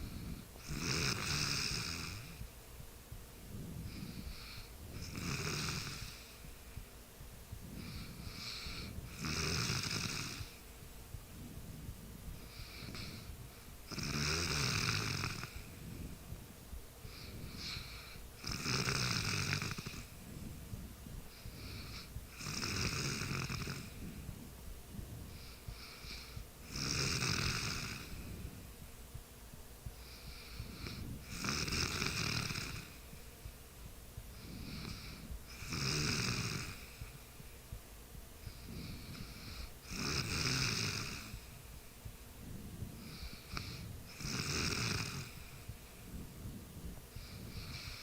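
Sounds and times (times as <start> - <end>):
person snoring: 0.0 - 2.4, 3.7 - 6.4, 7.8 - 10.6, 13.9 - 16.1, 17.1 - 20.1, 21.3 - 24.1, 25.4 - 28.4, 30.1 - 33.0, 34.4 - 37.1, 38.4 - 41.5, 43.0 - 45.5, 47.2 - 48.0.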